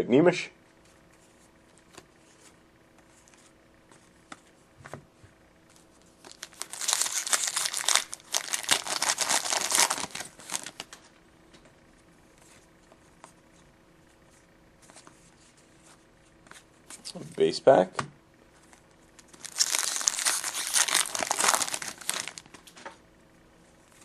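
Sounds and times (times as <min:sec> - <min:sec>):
foil wrapper crinkling and tearing: 0:06.2 - 0:11.0, 0:19.2 - 0:22.8.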